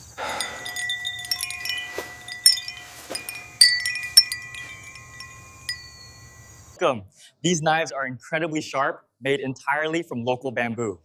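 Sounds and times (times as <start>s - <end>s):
chimes ringing: 0.2s - 6.8s.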